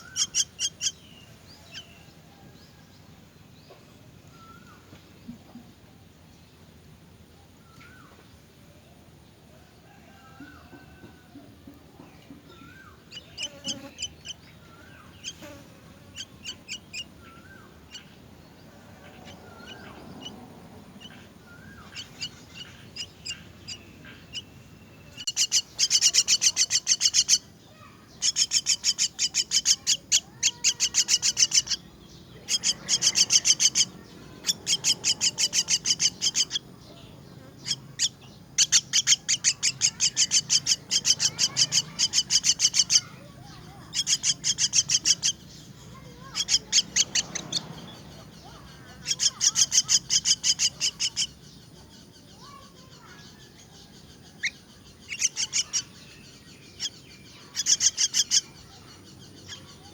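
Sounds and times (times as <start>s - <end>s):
myna nestlings begging calls: 0.0s - 1.9s, 12.7s - 18.2s, 19.0s - 24.5s, 25.1s - 36.7s, 37.5s - 51.6s, 52.4s - 59.9s.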